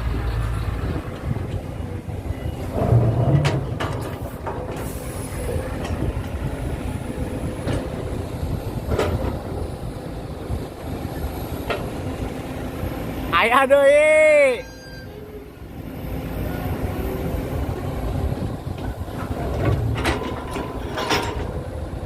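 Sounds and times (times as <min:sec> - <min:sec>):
model excavator low rumble: 0:00.0 - 0:14.0, 0:14.6 - 0:22.0.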